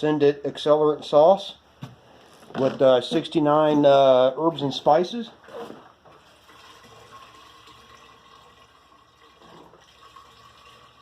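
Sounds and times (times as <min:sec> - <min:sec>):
liquid pouring into tank: 0:06.1 - 0:11.0.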